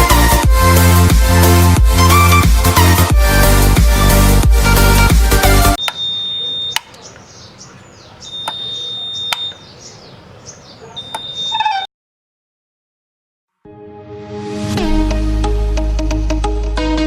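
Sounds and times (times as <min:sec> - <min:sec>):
high-pitched buzzer beep: 0:05.8 - 0:06.9, 0:08.3 - 0:09.6, 0:11.0 - 0:11.9
buzzer switch click: 0:05.8 - 0:09.8, 0:10.8 - 0:11.9
birds chirping faintly: 0:05.8 - 0:11.9.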